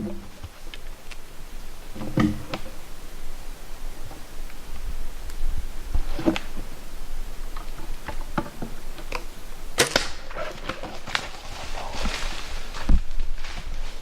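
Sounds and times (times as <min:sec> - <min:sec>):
bowstring release and arrow strike: 0:09.8 - 0:10.4.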